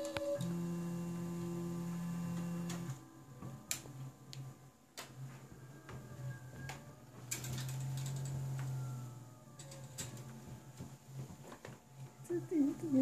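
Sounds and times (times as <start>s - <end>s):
print head gliding whines: 0.0s - 3.5s
printer motor hum: 0.0s - 13.0s.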